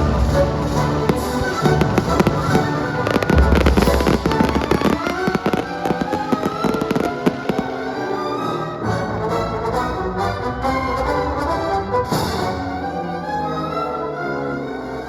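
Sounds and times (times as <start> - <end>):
fireworks bangs and crackles: 0.0 - 7.9
orchestral music: 0.0 - 15.0.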